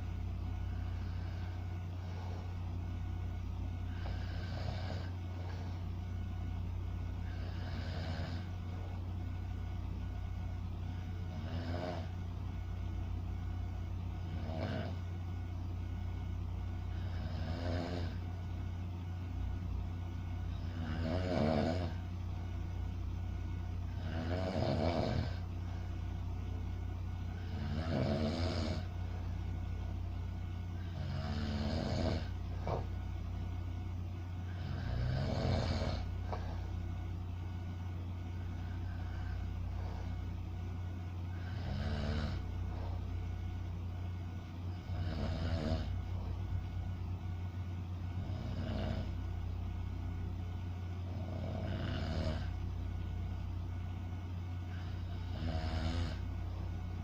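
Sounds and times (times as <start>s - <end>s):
steady low hum: 0.0s - 57.0s
person snoring: 0.6s - 2.5s, 3.9s - 5.8s, 7.2s - 8.7s, 10.9s - 12.2s, 14.2s - 15.1s, 16.9s - 18.2s, 20.5s - 22.0s, 23.9s - 25.5s, 27.4s - 28.9s, 30.8s - 32.9s, 34.5s - 36.7s, 38.5s - 40.2s, 41.3s - 43.1s, 44.7s - 46.4s, 48.1s - 49.3s, 51.1s - 52.6s, 54.7s - 56.3s.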